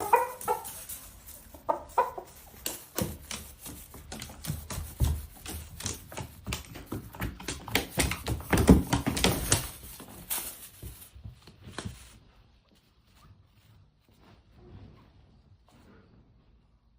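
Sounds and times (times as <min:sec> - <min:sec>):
chicken calling: 0:00.0 - 0:02.6
rapid clicks and knocks: 0:02.6 - 0:10.0.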